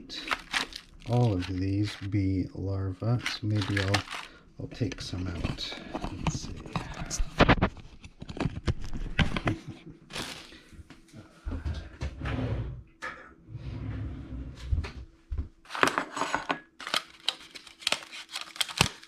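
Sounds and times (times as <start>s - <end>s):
food packaging clicks and rustles: 0.1s - 2.2s, 3.0s - 10.6s, 15.7s - 19.0s.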